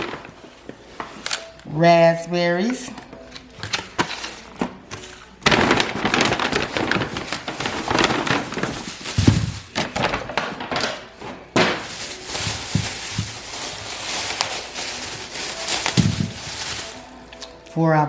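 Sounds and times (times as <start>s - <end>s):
grocery bag crinkling: 3.3s - 17.7s.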